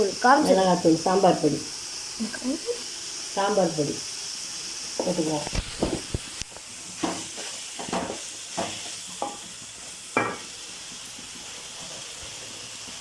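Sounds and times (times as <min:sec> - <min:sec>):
vegetables sizzling in oil: 0:00.0 - 0:13.0
spoon scraping a pan: 0:05.0 - 0:12.6.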